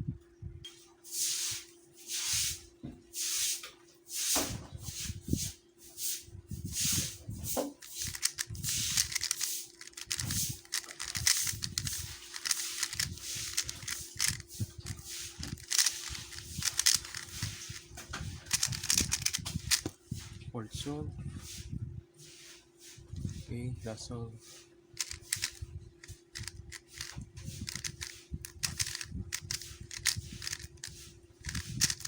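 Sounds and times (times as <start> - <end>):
plastic layers rubbing: 6.8 - 20.0, 25.0 - 32.0
puzzle cube plastic clicks: 7.6 - 14.4, 15.3 - 17.7, 18.5 - 20.0, 25.0 - 32.0.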